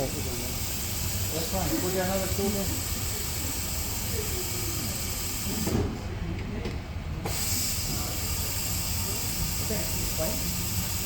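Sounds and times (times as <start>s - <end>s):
milling machine hiss: 7.3s - 11.0s.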